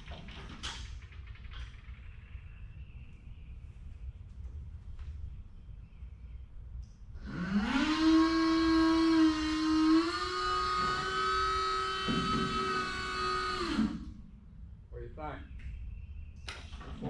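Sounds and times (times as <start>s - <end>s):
hydraulic pump motor whine: 7.2s - 14.5s.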